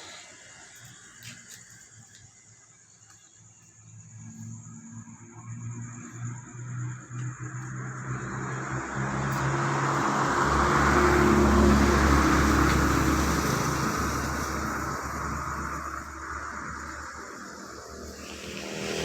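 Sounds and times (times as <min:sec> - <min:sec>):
motor vehicle passing by: 0:04.0 - 0:19.0.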